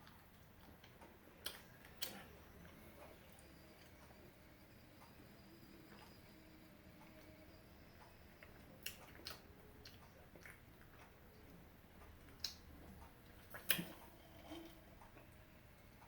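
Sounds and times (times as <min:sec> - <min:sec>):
biting and chewing chicken wings: 0:07.0 - 0:15.4.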